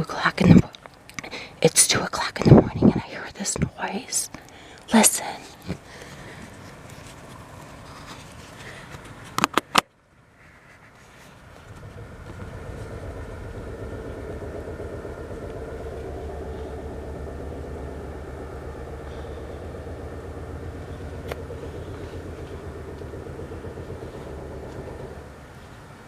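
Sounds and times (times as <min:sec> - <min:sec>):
steady hum: 0:00.0 - 0:09.4, 0:11.3 - 0:26.0
low pulsing knocking rumble: 0:02.3 - 0:03.8, 0:11.6 - 0:26.0.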